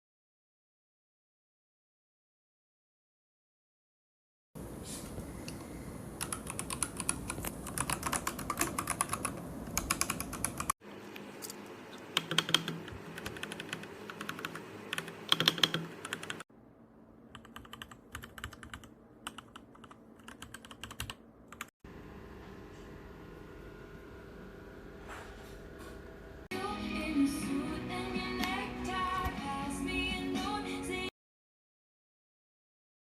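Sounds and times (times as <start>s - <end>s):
mechanical keyboard typing: 6.2s - 10.8s, 12.0s - 16.4s, 17.3s - 21.7s.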